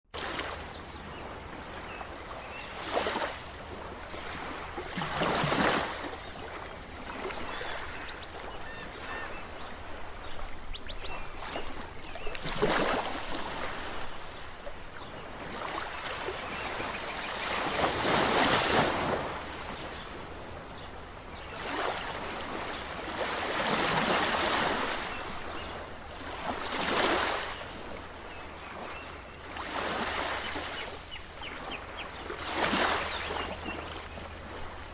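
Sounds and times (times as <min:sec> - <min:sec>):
ocean waves surging: 0:15.5 - 0:27.6.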